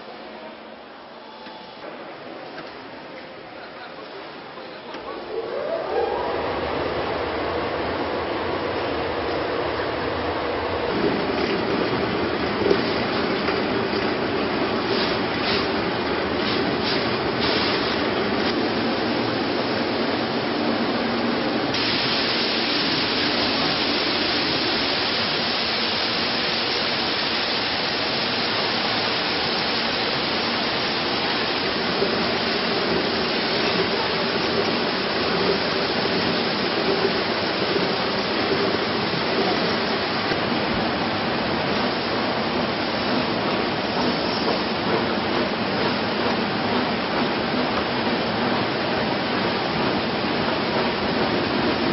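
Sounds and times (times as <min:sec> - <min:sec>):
washing machine spraying water: 0:11.0 - 0:51.9.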